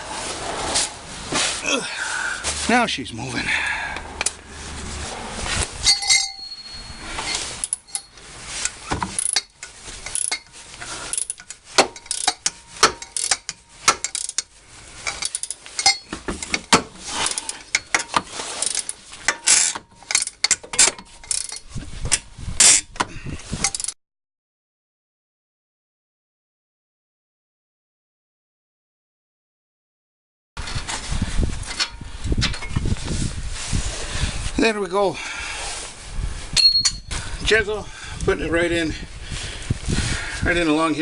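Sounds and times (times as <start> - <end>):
metal tools clanking: 5.8 - 22.7, 36.6 - 37.1
ratcheting socket wrench clicking: 11.1 - 14.5, 17.3 - 21.7.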